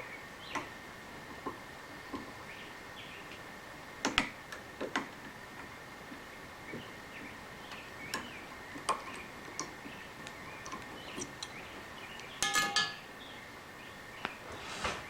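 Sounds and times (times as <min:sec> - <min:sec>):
faint steady high tone: 0:12.4 - 0:13.2
ringing metal clinks: 0:12.4 - 0:13.2.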